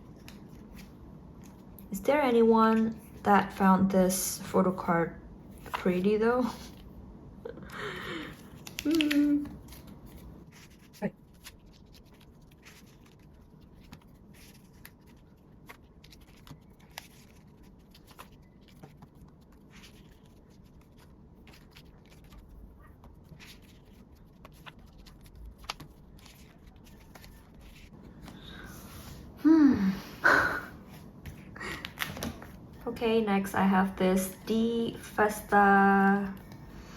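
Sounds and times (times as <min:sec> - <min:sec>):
low room hum: 0:00.0 - 0:36.9
clicks and rustles of plastic sleeves: 0:08.3 - 0:28.4.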